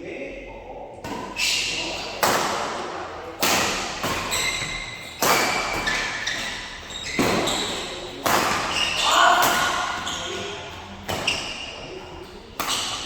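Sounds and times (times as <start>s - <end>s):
rackets hitting shuttlecock: 1.0s - 13.0s
shoe squeaks: 1.2s - 2.2s, 4.0s - 13.0s.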